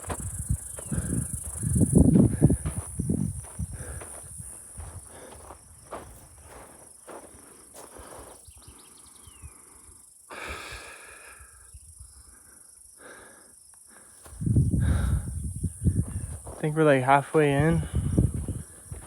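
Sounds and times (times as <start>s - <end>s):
footsteps on gravel trail: 0.0s - 8.8s, 14.2s - 19.0s
insect chirring: 0.0s - 19.0s
heavy breathing: 0.7s - 5.6s, 7.4s - 16.4s, 17.7s - 19.0s.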